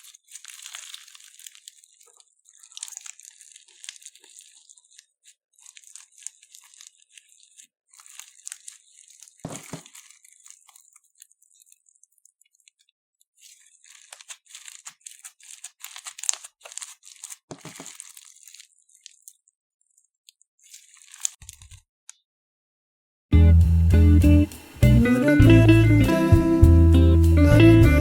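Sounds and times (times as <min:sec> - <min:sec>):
slime crackling and popping: 0:00.0 - 0:19.4, 0:20.3 - 0:21.7.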